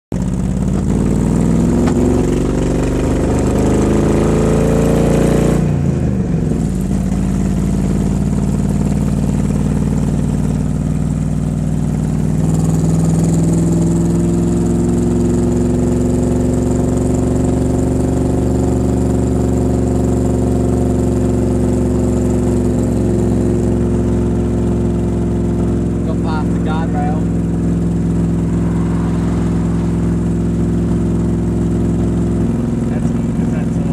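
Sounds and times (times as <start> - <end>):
car engine misfiring: 24.8 - 33.9.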